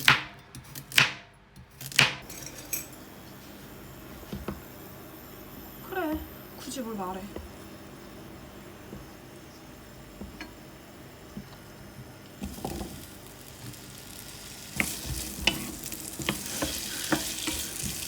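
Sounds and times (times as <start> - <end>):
food sizzling in a frying pan: 2.2 - 18.0
utensil tapping a pan: 14.7 - 18.0.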